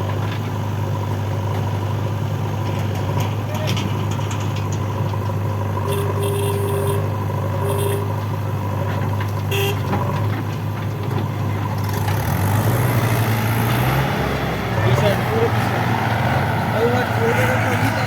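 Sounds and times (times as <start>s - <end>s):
heavy diesel engine running: 0.0s - 18.0s
short horn toots: 5.9s - 8.2s, 9.5s - 9.9s.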